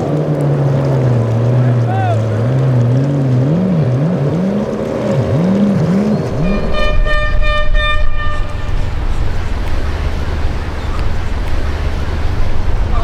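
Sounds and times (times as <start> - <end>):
wavering low-pitched sound: 0.0 - 13.0
boat horn short toots: 6.2 - 9.1.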